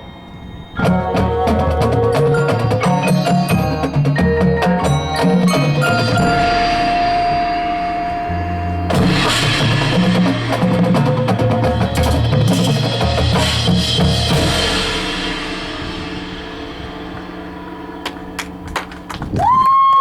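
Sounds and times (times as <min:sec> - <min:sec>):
drumline with mallet percussion: 0:00.6 - 0:19.2
held note over bass line: 0:00.8 - 0:12.6.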